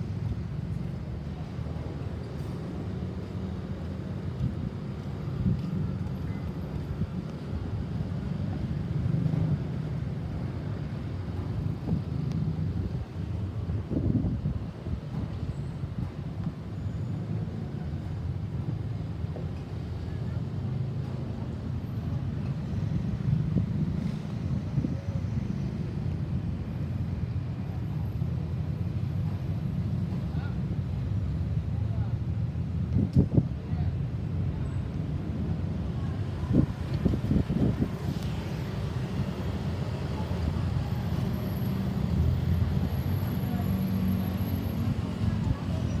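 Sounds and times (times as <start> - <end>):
road vehicles rumbling: 0.0 - 46.0
wind buffeting microphone: 35.9 - 40.8.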